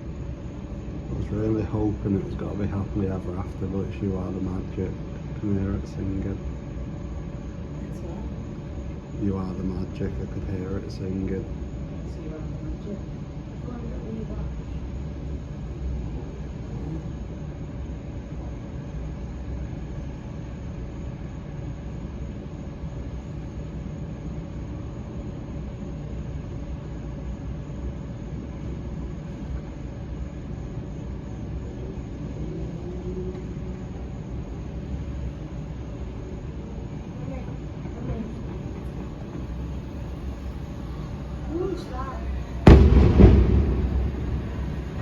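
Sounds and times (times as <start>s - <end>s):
faint steady hum: 0.0s - 45.0s
low rumble: 38.8s - 45.0s.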